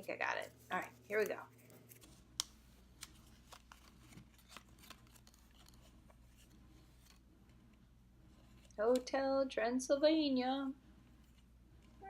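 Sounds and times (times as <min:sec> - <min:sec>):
wrapping rustling: 0:00.0 - 0:08.8
low steady hum: 0:00.0 - 0:12.0.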